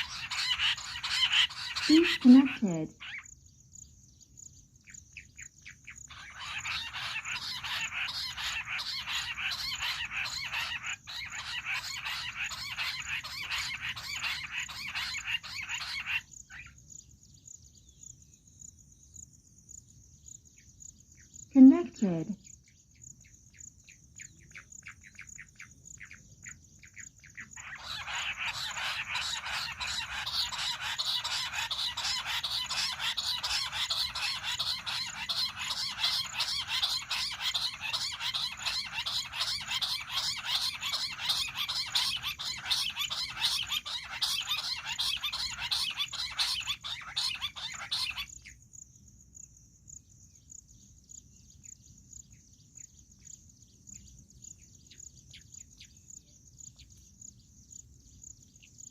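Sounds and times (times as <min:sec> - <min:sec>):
quail rapid chattering call: 0:00.0 - 0:03.3, 0:05.3 - 0:16.8, 0:24.2 - 0:48.6
faint bird chirps: 0:00.0 - 0:58.9.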